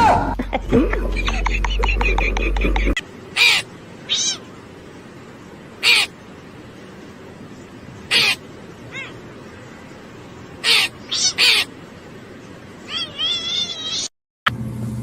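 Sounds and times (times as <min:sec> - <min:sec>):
animal making harsh calls: 0:01.5 - 0:04.5, 0:05.8 - 0:06.2, 0:08.1 - 0:09.2, 0:10.6 - 0:11.8.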